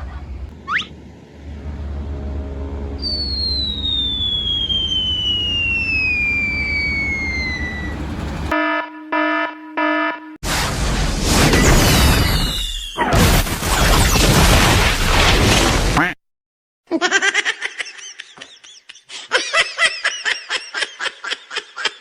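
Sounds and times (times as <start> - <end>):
blast with falling whistling sweeps: 0.6 - 1.0, 2.9 - 8.5, 10.5 - 14.2
high-pitched bubbling laughter: 16.9 - 22.0.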